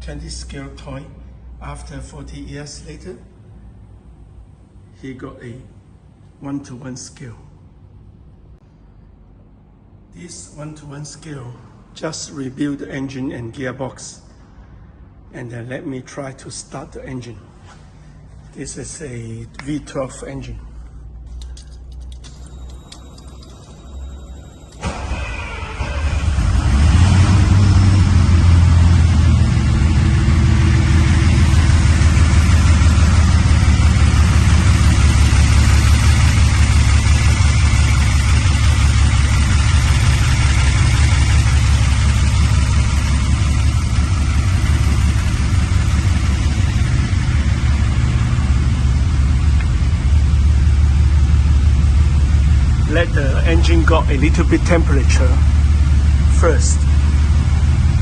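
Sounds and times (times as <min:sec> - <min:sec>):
car engine starting and idling: 0:20.8 - 0:58.0.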